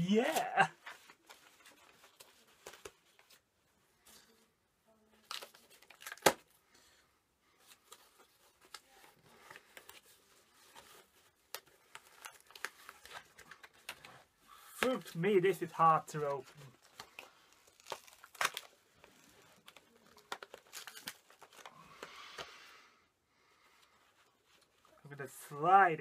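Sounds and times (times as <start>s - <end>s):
plastic wrap crinkling: 7.8s - 22.4s.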